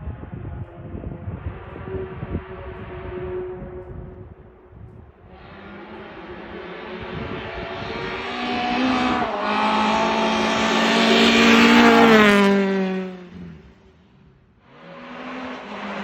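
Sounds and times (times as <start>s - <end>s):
rally car passing by: 5.3s - 16.0s.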